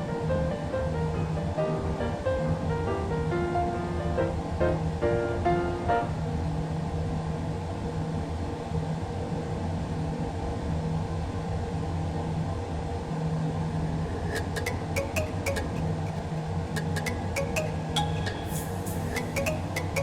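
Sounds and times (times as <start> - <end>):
sharp clicks with bright pings: 14.4 - 20.0.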